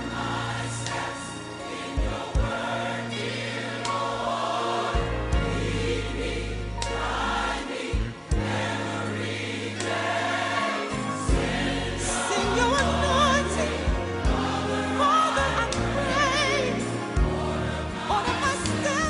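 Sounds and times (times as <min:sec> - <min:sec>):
choir singing: 0:00.0 - 0:19.0
sustained low accompaniment: 0:05.0 - 0:10.2, 0:11.0 - 0:18.8.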